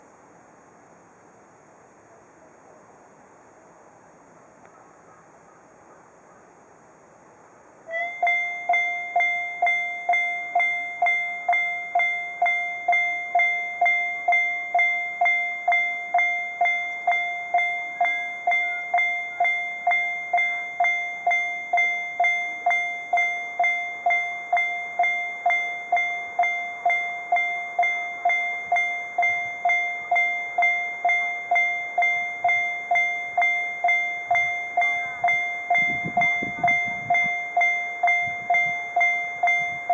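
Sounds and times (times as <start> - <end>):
level-crossing alarm bell ringing: 7.9 - 39.9.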